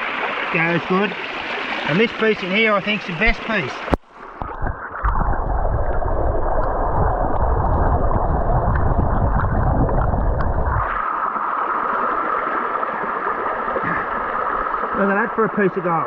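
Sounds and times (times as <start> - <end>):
muffled underwater waterfall: 0.0 - 16.0
low rumble: 4.5 - 11.0.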